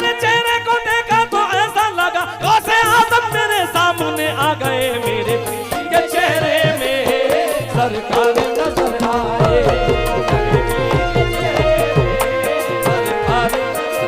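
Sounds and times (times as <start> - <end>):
qawwali ensemble melody: 0.0 - 14.0
hand-drum beat: 2.8 - 14.0.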